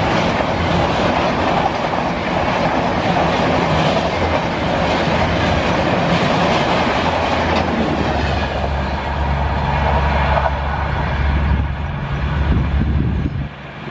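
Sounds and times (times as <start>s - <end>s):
train wheels clattering over rails: 0.0s - 10.8s.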